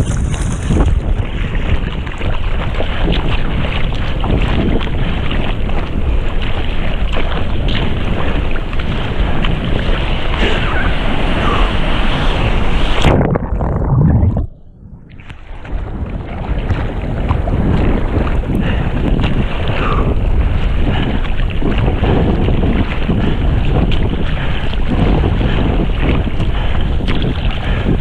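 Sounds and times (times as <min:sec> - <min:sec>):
wind buffeting microphone: 0:00.0 - 0:28.0
ocean surf: 0:05.1 - 0:23.7.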